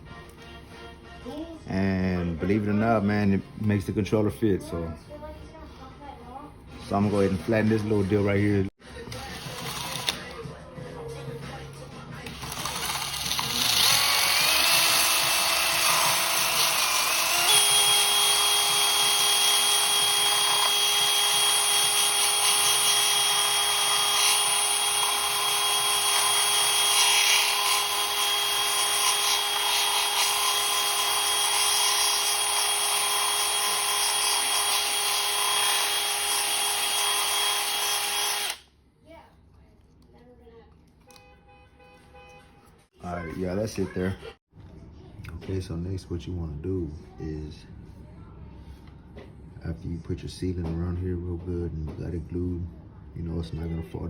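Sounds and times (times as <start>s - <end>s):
rotary tool whine: 12.3s - 38.6s.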